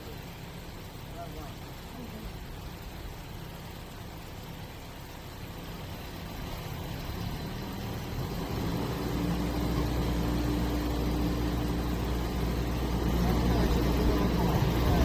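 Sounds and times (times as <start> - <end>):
engine running: 0.0 - 15.0
steady hum: 8.8 - 15.0.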